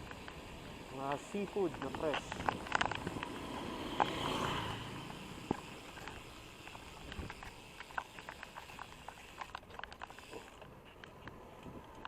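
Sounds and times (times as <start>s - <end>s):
bicycle clicking and ticking: 0.0s - 12.0s
faint rolling noise: 0.0s - 12.0s.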